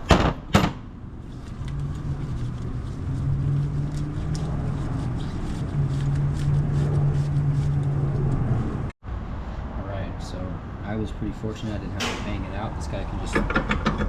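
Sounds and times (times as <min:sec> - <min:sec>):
low engine hum: 0:01.1 - 0:09.0
mallet striking metal: 0:12.0 - 0:12.5.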